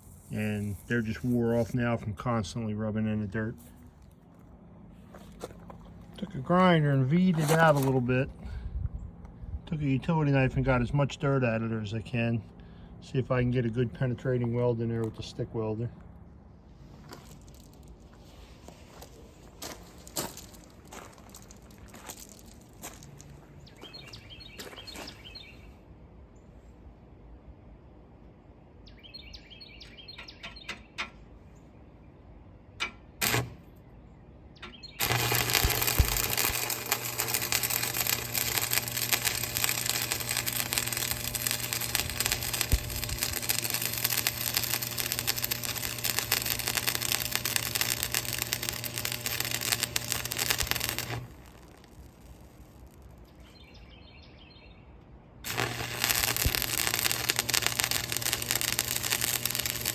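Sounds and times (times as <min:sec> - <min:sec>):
welding arc crackling: 0:00.0 - 0:01.8, 0:33.2 - 0:33.6, 0:35.0 - 0:53.3, 0:55.4 - 0:59.9.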